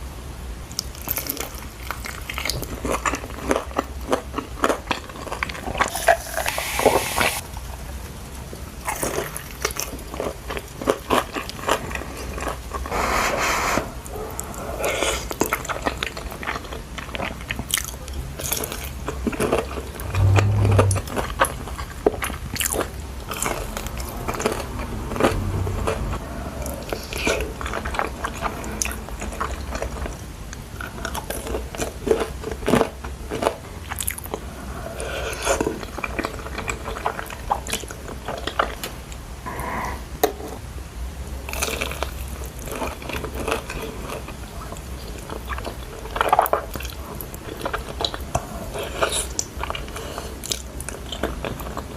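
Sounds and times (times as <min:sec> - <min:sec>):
chewing crispy fried chicken: 0:00.7 - 0:06.5, 0:07.4 - 0:51.9
low thud: 0:20.0 - 0:21.2.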